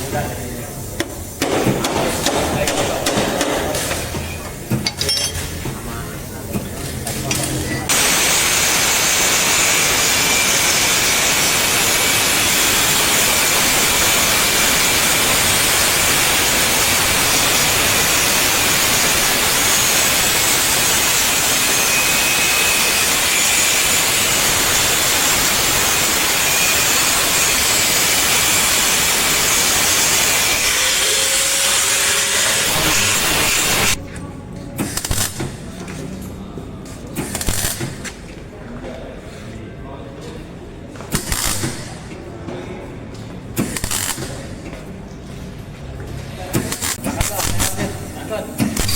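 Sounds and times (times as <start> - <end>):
abrasive power tool on sheet metal: 7.9 - 34.0, 34.8 - 35.6, 37.2 - 38.1, 41.1 - 42.1, 43.6 - 44.6, 46.6 - 48.9.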